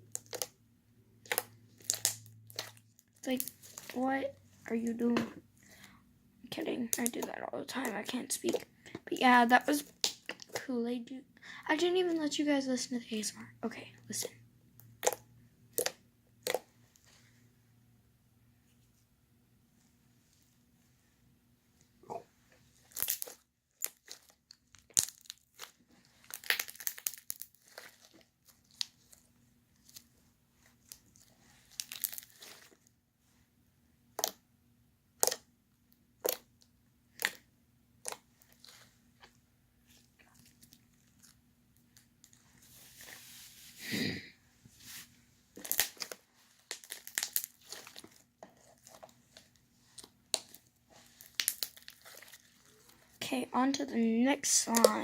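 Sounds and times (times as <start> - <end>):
slime squelching and popping: 0.0 - 0.6, 1.2 - 4.2, 6.6 - 10.7, 14.0 - 17.1, 22.8 - 32.9, 34.1 - 34.5, 35.1 - 42.4, 45.5 - 53.4, 54.4 - 55.0.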